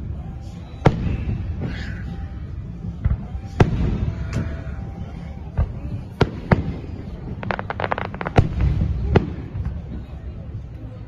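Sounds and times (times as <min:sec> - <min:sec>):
fireworks booming: 0:00.8 - 0:01.8, 0:02.9 - 0:04.8, 0:05.5 - 0:10.0.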